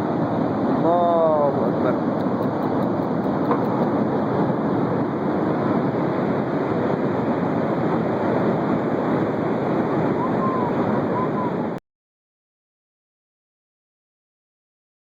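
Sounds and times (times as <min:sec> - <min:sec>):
rushing turbulent water: 0:00.0 - 0:11.8.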